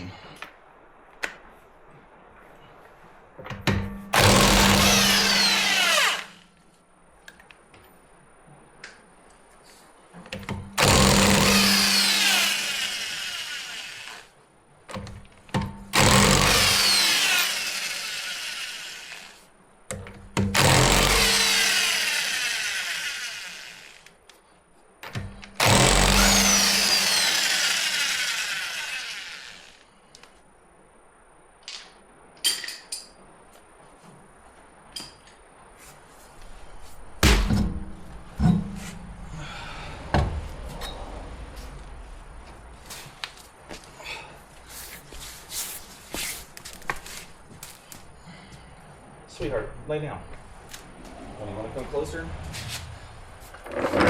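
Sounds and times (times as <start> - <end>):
impact wrench running: 4.2 - 6.4, 10.8 - 14.2, 16.0 - 19.4, 20.6 - 24.1, 25.6 - 29.8.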